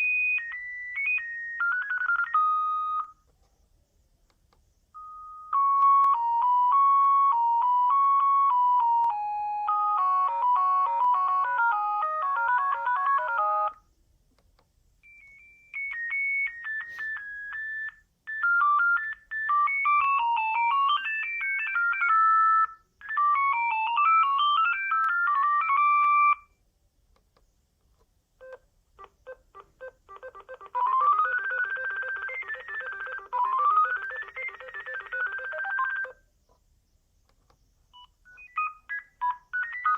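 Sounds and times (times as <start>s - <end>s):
mobile phone ringtone melodies: 0.0s - 3.2s, 5.0s - 13.8s, 15.0s - 26.5s, 28.4s - 36.2s, 38.0s - 39.9s.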